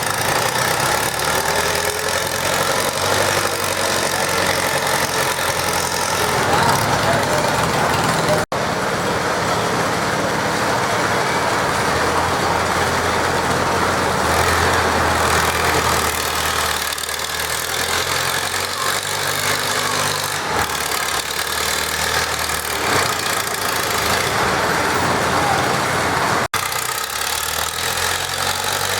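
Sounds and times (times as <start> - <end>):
tractor engine running: 0.0 - 28.9.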